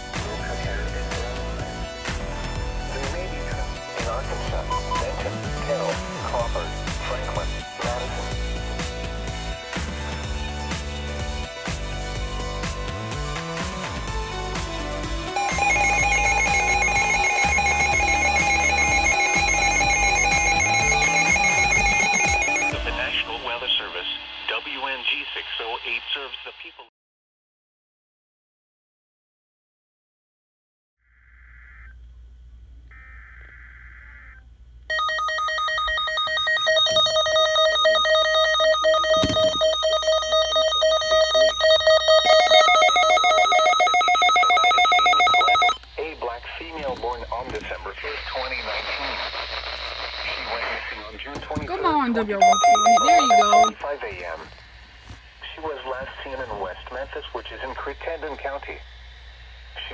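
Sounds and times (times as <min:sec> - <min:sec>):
background music: 0:00.0 - 0:24.5, 0:34.9 - 0:45.8, 0:51.7 - 0:53.8
electronic alarm tone: 0:04.6 - 0:05.7, 0:15.2 - 0:23.0, 0:34.9 - 0:45.8, 0:52.4 - 0:53.8.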